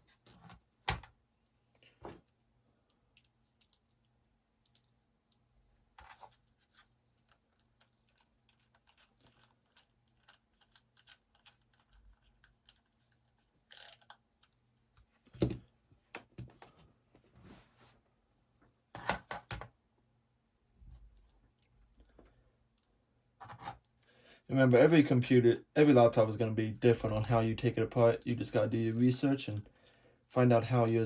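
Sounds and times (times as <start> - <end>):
small laptop parts clicking: 7.2 - 14.6.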